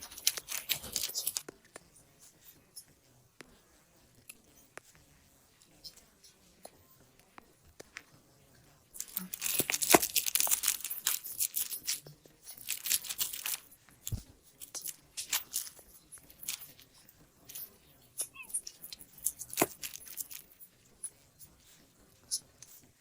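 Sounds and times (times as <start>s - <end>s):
crinkle paper crackling: 0.0s - 1.4s, 9.0s - 20.8s.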